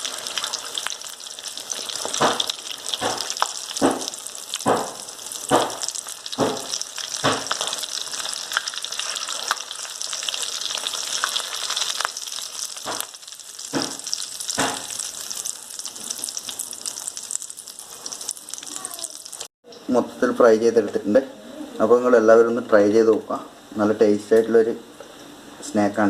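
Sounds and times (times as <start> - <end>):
deep-frying oil sizzling: 0.0 - 19.5
utensil knocking pan: 2.0 - 7.8, 12.8 - 15.0.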